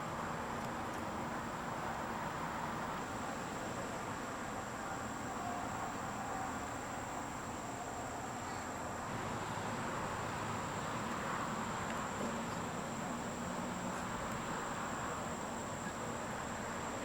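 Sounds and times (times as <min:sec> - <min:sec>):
outdoor background hiss: 0:00.0 - 0:17.0.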